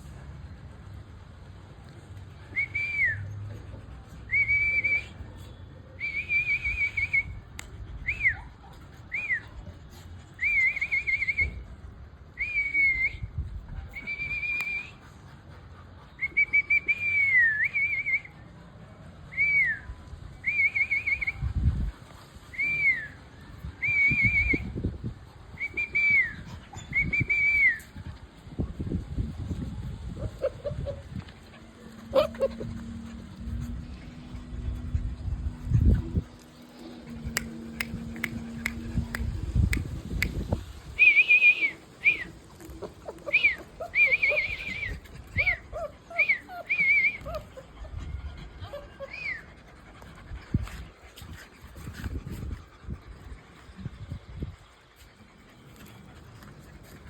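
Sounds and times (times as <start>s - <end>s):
puppy whimpering: 30.1s - 34.0s, 42.2s - 49.8s.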